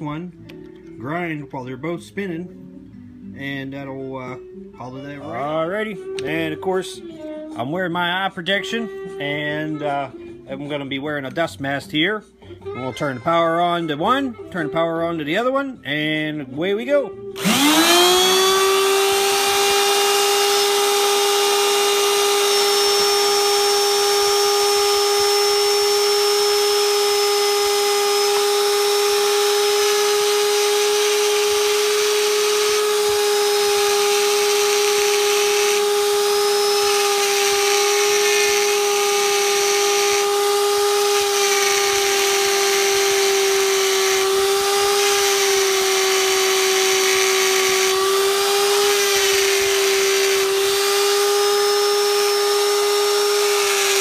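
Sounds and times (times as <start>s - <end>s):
die grinders whining: 17.4s - 54.0s.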